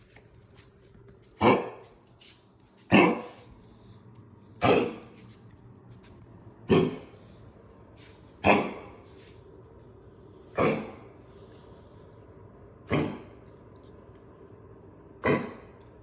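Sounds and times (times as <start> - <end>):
dog coughing: 1.4 - 1.8, 2.9 - 3.4, 4.6 - 5.1, 6.7 - 7.1, 8.4 - 8.9, 10.5 - 11.1, 12.9 - 13.3, 15.2 - 15.7.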